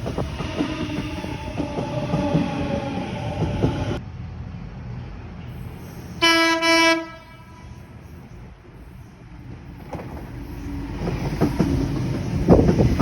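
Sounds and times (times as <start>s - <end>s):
train wheels rumbling on rails: 0.0s - 13.0s
train horn blasts: 6.2s - 7.9s.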